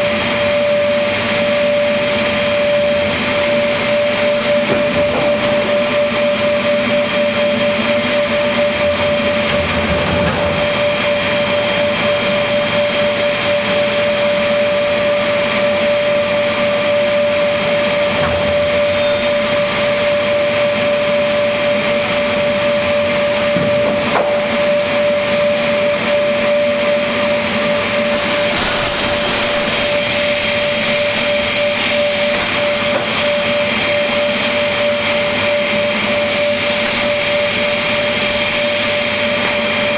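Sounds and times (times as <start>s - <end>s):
board cutting machine running: 0.0s - 39.9s.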